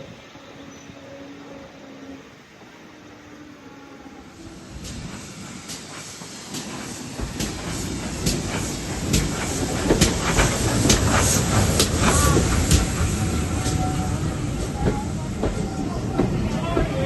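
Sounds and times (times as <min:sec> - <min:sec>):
train rumble: 0:00.0 - 0:17.0
train wheels clicking over rail joints: 0:04.7 - 0:17.0.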